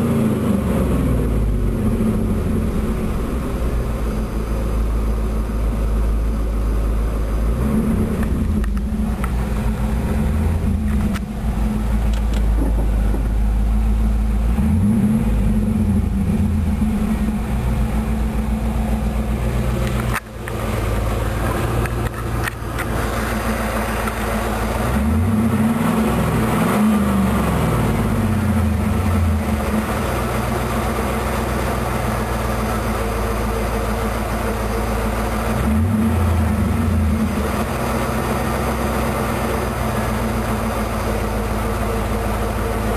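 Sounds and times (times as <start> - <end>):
car engine running: 0.0 - 42.9
whine from rear of car: 0.0 - 42.9.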